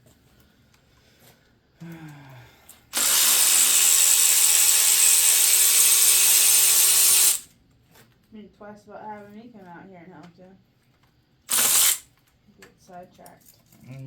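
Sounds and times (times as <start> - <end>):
loud steady hiss: 3.0 - 7.5, 11.5 - 12.0.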